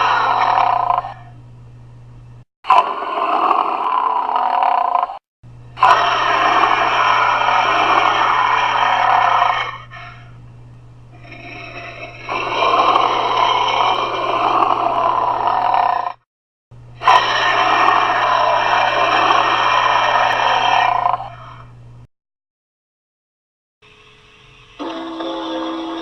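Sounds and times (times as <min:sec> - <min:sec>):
dinosaur roar from altered voice: 0:00.0 - 0:01.3, 0:02.7 - 0:05.2, 0:05.8 - 0:10.3, 0:11.2 - 0:16.2, 0:17.0 - 0:21.7, 0:24.8 - 0:26.0
steady low hum: 0:00.0 - 0:02.5, 0:05.4 - 0:22.1.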